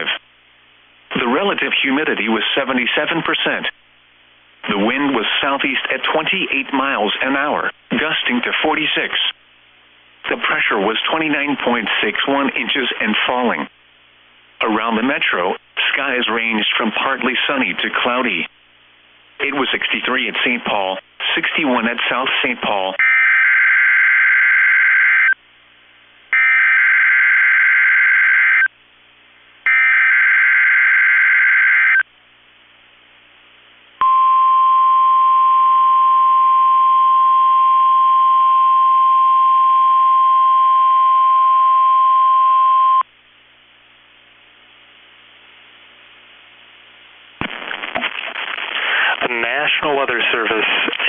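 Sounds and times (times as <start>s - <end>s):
steady high warning beep: 34.0s - 43.1s.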